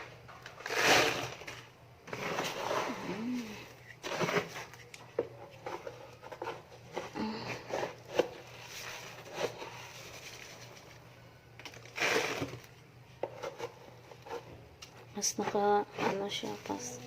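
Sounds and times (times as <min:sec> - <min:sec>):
scoop scraping cat litter: 0:00.6 - 0:04.9, 0:11.9 - 0:12.6.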